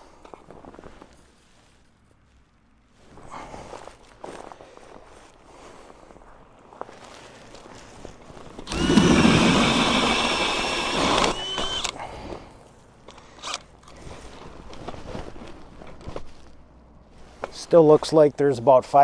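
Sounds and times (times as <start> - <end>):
ice auger whirring: 8.6 - 12.0.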